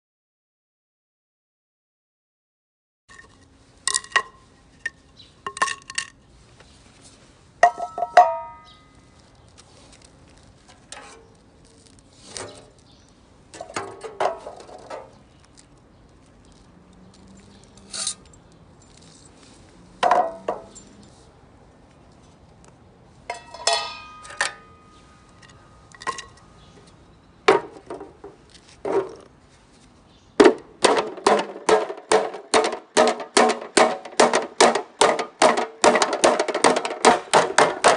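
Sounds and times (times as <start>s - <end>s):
metal cookware clinking and knocking: 7.6s - 8.8s, 23.3s - 24.8s.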